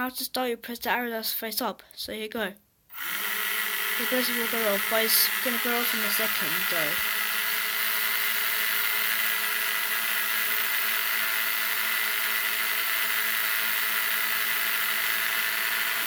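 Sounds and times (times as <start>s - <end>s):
drone propellers whirring: 2.9s - 11.2s.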